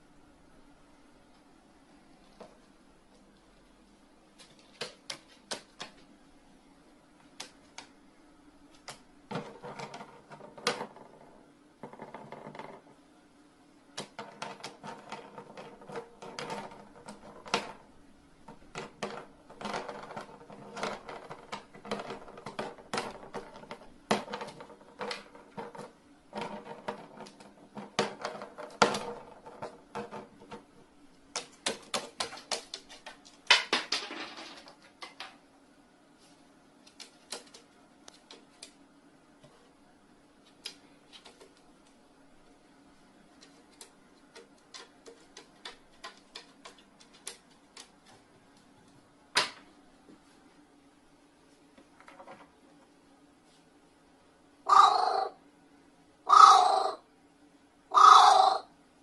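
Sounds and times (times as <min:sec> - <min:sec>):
clicks and taps on hard surface: 0:14.0 - 0:17.8, 0:18.4 - 0:35.4, 0:36.8 - 0:38.8, 0:43.4 - 0:48.7.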